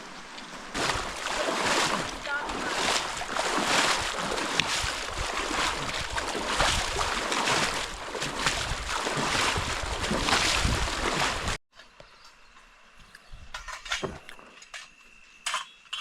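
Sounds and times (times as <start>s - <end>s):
rushing river water: 0.0s - 11.6s.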